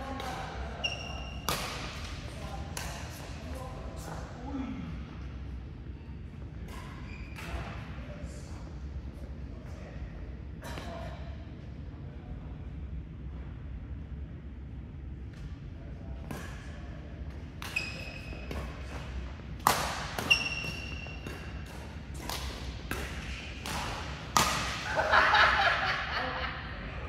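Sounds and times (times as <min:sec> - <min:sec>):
shoes squeaking on court floor: 0:00.8 - 0:01.6, 0:06.6 - 0:07.8, 0:17.6 - 0:19.1, 0:19.8 - 0:24.6
rackets striking shuttlecock: 0:17.6 - 0:24.9.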